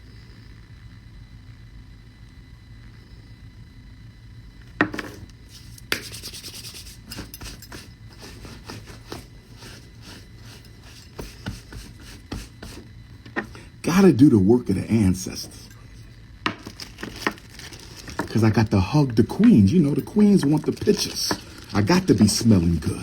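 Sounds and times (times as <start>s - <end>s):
rubbing and scraping handling noise: 4.8s - 14.4s, 15.1s - 23.0s
rustling strokes: 5.4s - 12.8s, 19.9s - 23.0s.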